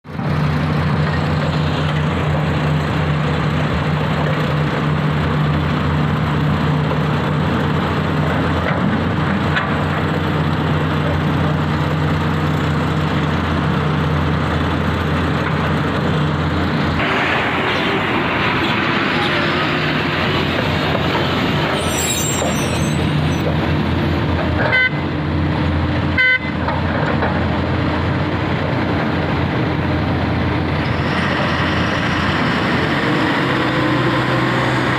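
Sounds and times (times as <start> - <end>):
heavy diesel engines running: 0.0 - 34.9
horn toots: 24.6 - 25.2, 26.2 - 26.6.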